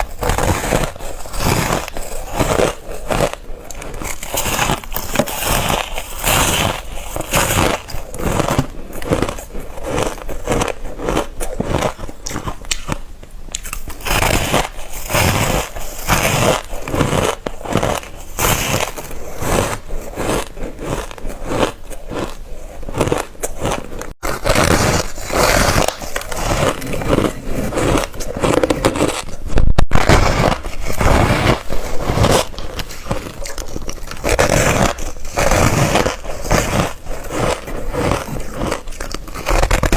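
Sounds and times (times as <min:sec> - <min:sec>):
ice being chewed: 0:00.0 - 0:29.4, 0:30.0 - 0:39.9.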